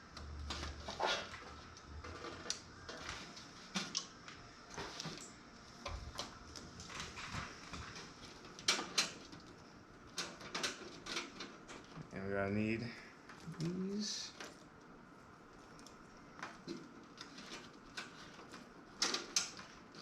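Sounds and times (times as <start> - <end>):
cables clicking and rustling: 0.0 - 12.2, 13.2 - 20.0.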